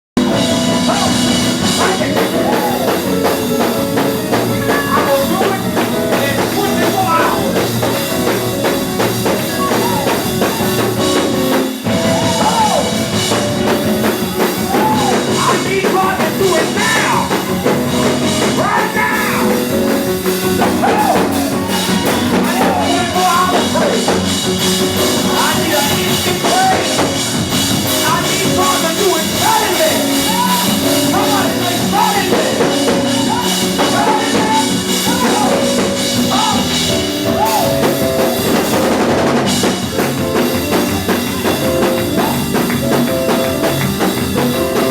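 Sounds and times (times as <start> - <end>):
drum kit fast beat: 0.2 - 44.9
held instrument chords: 0.2 - 44.9
voices singing and shouting: 0.7 - 3.8, 9.2 - 11.2, 11.8 - 37.9.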